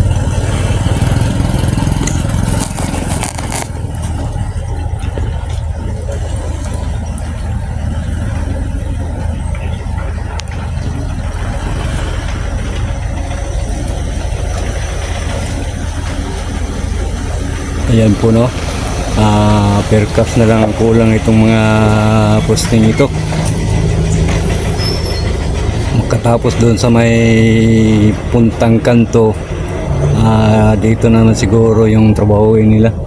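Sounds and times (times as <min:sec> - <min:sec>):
road noise: 0:00.0 - 0:33.0
vehicle engine rumbling: 0:00.0 - 0:33.0
brief crackle: 0:02.0 - 0:04.3.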